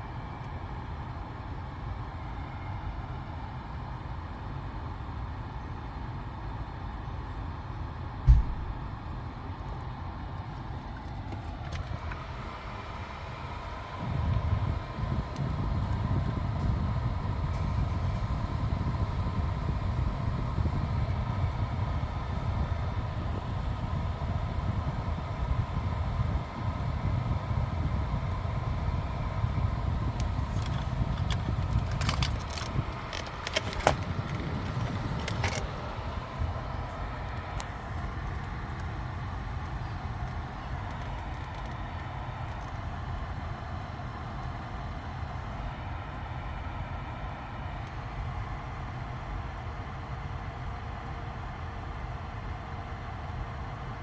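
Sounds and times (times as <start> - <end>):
car cabin rumble: 10.4 - 16.8, 17.5 - 23.7, 30.0 - 44.1
short clicks and rattles: 30.1 - 42.8.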